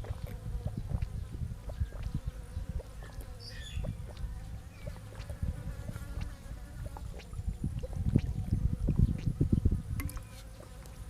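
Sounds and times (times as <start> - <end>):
fly buzzing: 0.0 - 7.5.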